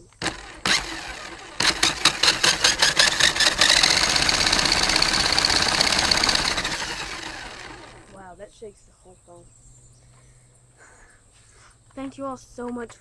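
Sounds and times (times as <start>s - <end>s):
toy car motor whirring: 0.0s - 8.2s.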